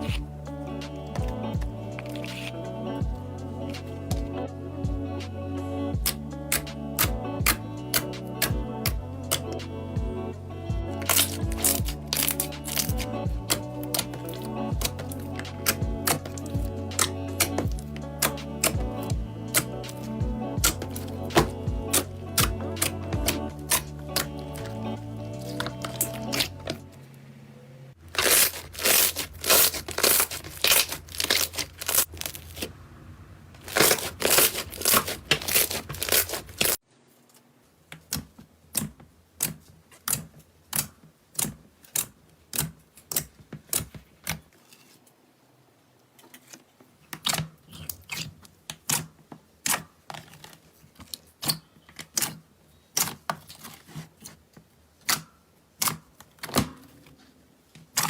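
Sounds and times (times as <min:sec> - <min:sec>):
slime crackling and popping: 0:11.0 - 0:18.8, 0:25.4 - 0:26.8, 0:28.1 - 0:32.7, 0:33.6 - 0:36.8.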